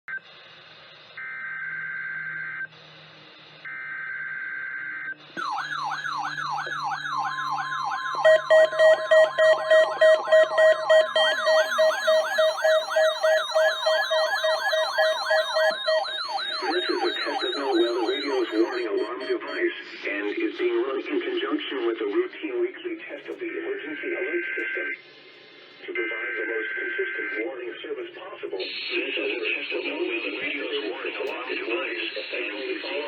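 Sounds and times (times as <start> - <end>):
steady warning alarm tone: 1.0 - 20.6
falling weather-alarm siren: 1.2 - 2.7, 3.6 - 19.7
digital header tones: 5.4 - 19.8
loud pulsing beep: 5.4 - 19.8
radio hiss: 16.5 - 33.0.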